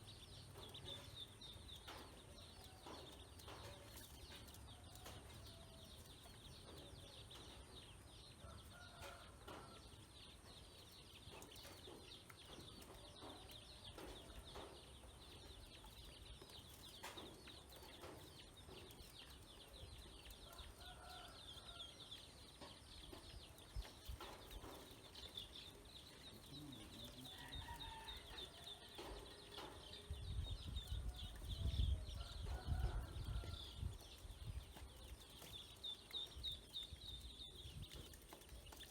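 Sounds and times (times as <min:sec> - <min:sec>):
ducklings peeping: 0:22.0 - 0:38.9.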